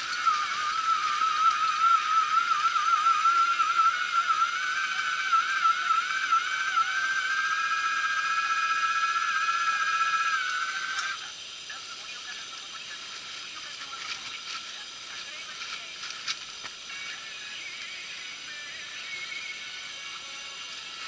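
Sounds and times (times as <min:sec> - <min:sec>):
high whistling tone: 0:00.0 - 0:11.8, 0:16.9 - 0:21.0.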